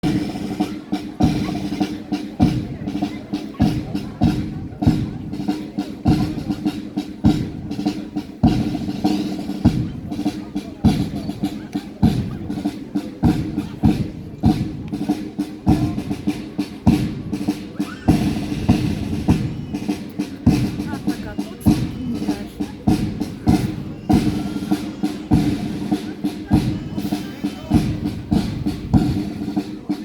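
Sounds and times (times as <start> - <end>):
military band playing march: 0.0 - 30.0
bass drum beating: 18.1 - 29.4.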